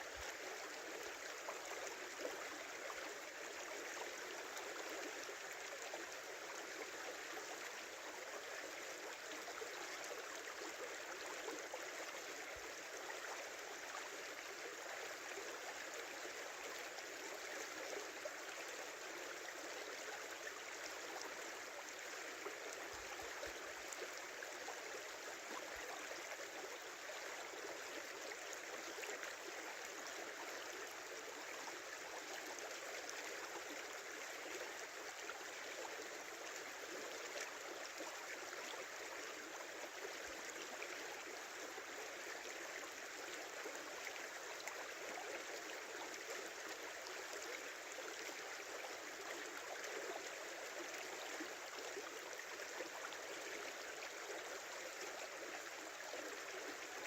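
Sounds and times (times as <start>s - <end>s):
river water rushing and babbling: 0.0s - 57.0s.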